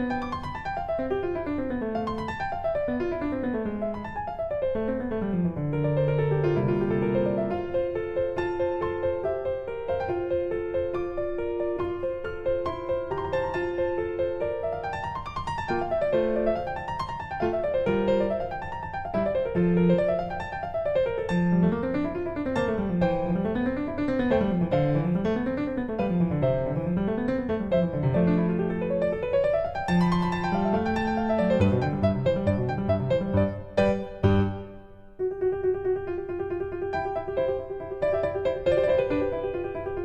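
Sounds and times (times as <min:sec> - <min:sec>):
piano arpeggios: 0:00.0 - 0:40.0.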